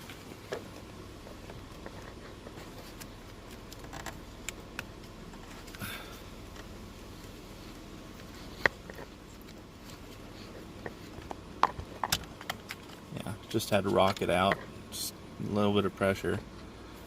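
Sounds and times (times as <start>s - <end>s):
plastic connector clicks and scrapes: 1.4s - 5.8s.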